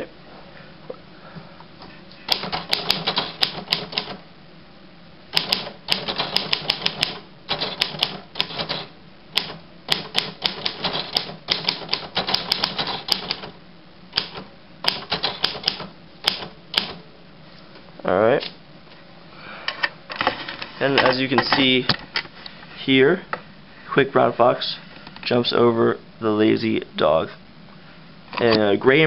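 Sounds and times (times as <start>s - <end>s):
manual typewriter typing: 2.3s - 4.2s, 5.3s - 13.6s, 14.2s - 17.0s.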